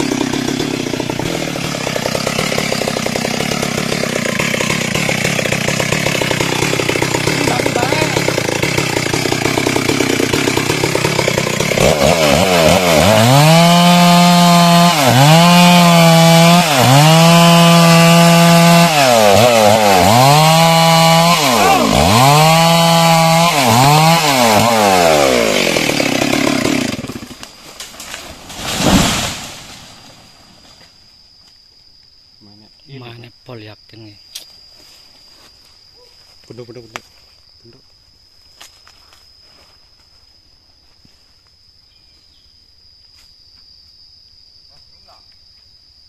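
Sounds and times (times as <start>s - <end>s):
chainsaw cutting wood: 0.0s - 30.9s.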